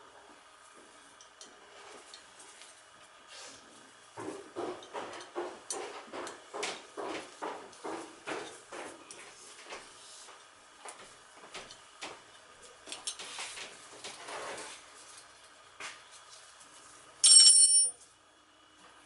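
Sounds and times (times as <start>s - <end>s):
tools and metal parts clicking: 17.2s - 18.0s.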